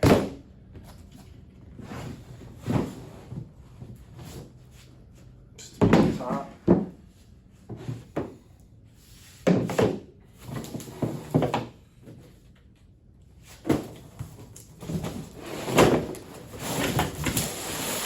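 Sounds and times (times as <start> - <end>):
plastic parts knocking and thumping: 5.8 - 7.0, 9.4 - 11.7.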